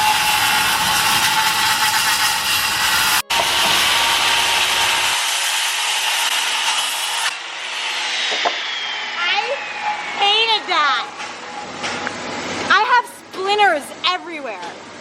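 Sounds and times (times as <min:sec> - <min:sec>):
power saw cutting wood: 0:00.0 - 0:11.6.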